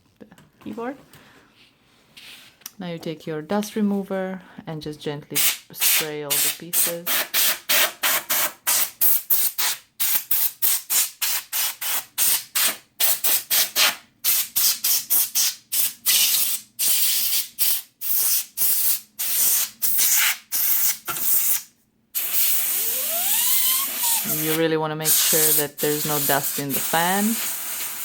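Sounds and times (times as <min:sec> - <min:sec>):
compressed air spraying: 0:05.4 - 0:21.6, 0:22.2 - 0:28.0.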